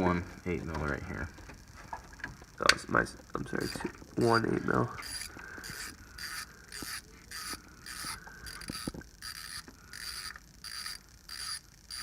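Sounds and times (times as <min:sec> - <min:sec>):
ratchet wrench clicking: 0:05.0 - 0:12.0.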